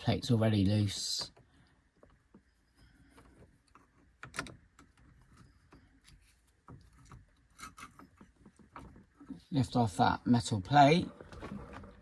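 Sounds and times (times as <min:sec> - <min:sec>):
metal parts rubbing and clicking: 0:06.8 - 0:08.9.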